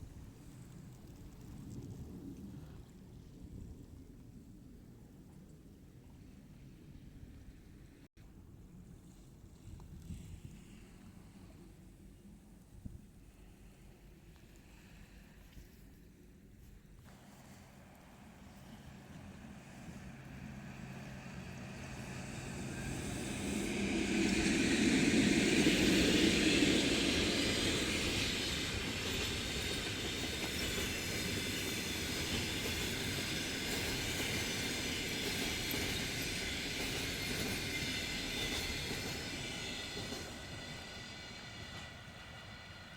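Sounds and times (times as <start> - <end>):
train passing on track: 16.7 - 42.9.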